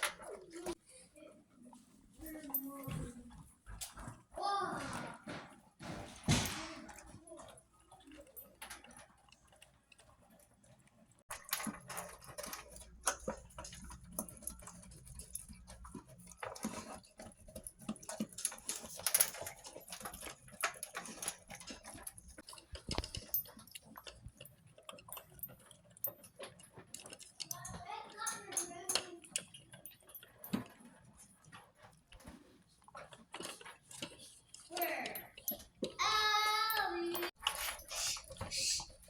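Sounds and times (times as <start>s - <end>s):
dogs crunching food: 2.4s - 39.0s
dogs licking: 6.8s - 36.1s, 37.2s - 39.0s.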